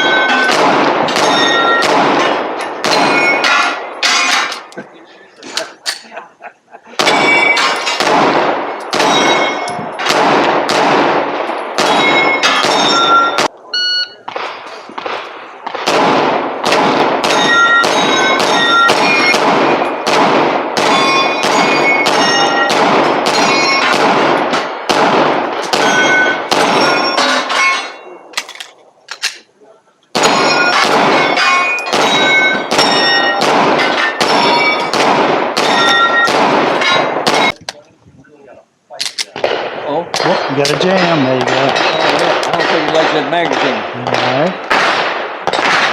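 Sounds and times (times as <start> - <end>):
semi-automatic gunshots: 0.0 - 4.3, 7.0 - 13.6, 14.2 - 27.2, 30.1 - 37.6, 39.2 - 45.9
steel targets ringing: 0.0 - 4.7, 7.0 - 8.2, 8.8 - 10.1, 11.6 - 14.2, 17.2 - 20.1, 20.8 - 24.8, 25.5 - 28.3, 30.2 - 37.6.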